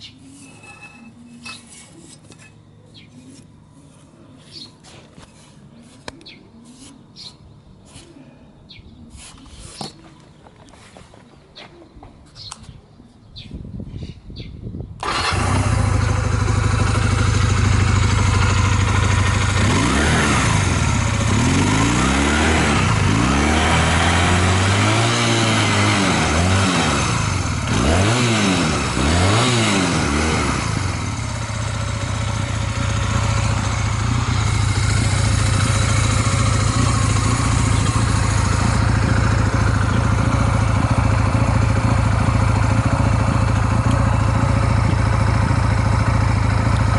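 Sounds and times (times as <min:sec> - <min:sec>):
motorcycle engine revving: 0:15.0 - 0:46.9
motorcycle engine starting and idling: 0:15.0 - 0:46.9.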